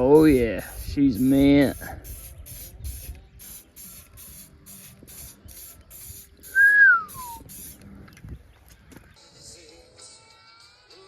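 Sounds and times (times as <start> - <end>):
aerosol can hissing in pulses: 0.2 - 7.8
loud whistle: 6.5 - 7.4.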